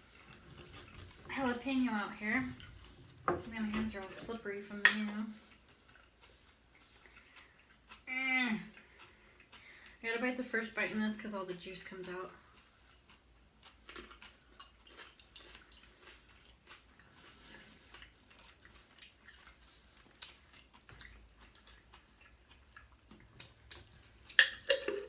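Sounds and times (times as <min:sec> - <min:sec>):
person chewing a burger: 0:00.0 - 0:01.3, 0:05.3 - 0:08.1, 0:08.7 - 0:10.0, 0:12.4 - 0:25.0.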